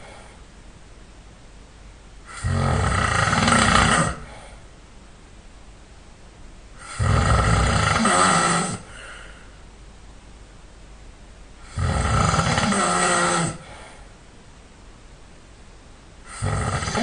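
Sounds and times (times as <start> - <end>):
person snoring loudly: 2.3 - 4.6, 6.8 - 9.2, 11.6 - 13.9, 16.3 - 17.0.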